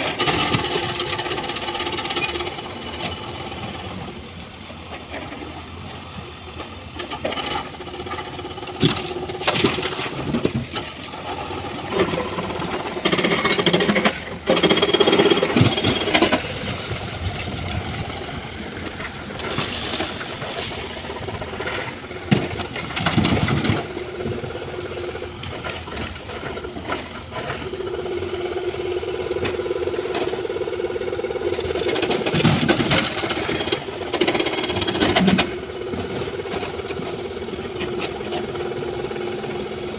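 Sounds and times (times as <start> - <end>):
excavator diesel engine: 0.0 - 39.9
hydraulic whine: 0.0 - 39.9.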